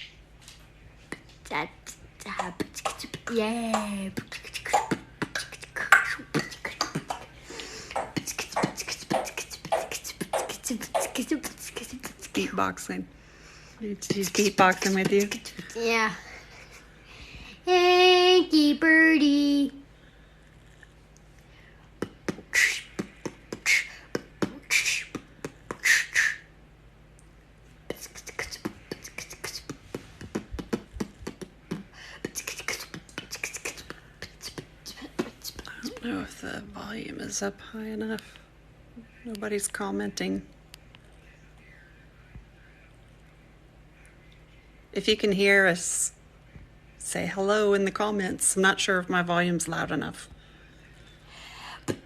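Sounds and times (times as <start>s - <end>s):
parrot beatboxing: 1.1s - 12.5s, 22.0s - 26.5s, 27.9s - 36.0s
mouth clicks and pops: 28.0s - 35.7s.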